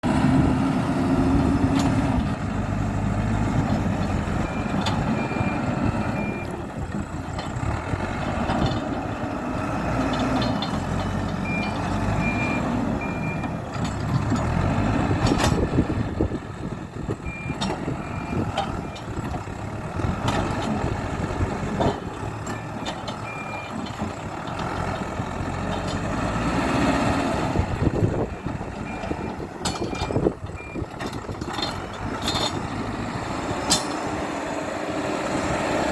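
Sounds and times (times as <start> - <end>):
backhoe diesel engine under load: 0.0 - 35.9
reversing alarm beeping: 4.4 - 6.6, 11.4 - 13.5, 17.2 - 19.1, 22.5 - 23.8, 28.8 - 30.9
sharp metal clanks: 33.6 - 34.1.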